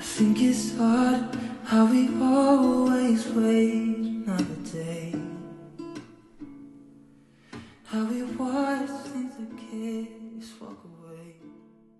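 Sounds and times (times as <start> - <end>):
person singing: 0.0 - 5.6, 7.8 - 11.6
acoustic guitar strumming: 0.0 - 11.9.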